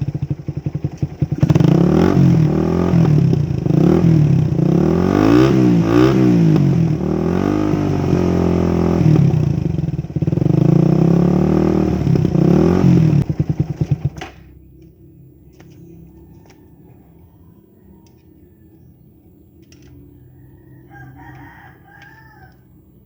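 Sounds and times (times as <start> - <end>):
motorcycle engine revving: 0.0 - 17.0.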